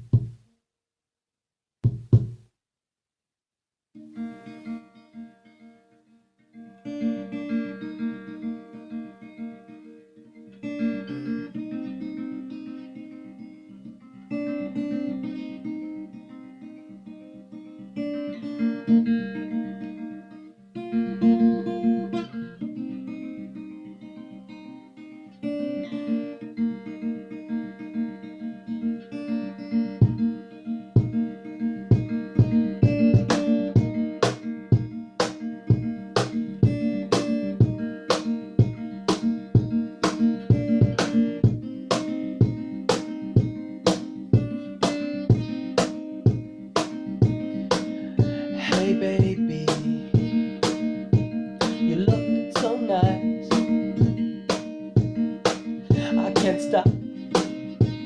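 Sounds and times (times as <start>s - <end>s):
acoustic guitar chords: 0.0s - 0.4s, 6.6s - 58.0s
short low thumps: 0.0s - 0.4s, 1.8s - 2.4s.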